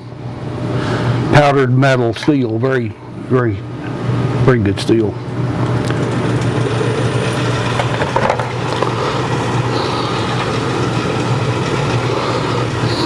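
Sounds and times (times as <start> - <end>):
wood lathe motor hum: 5.7 - 13.0.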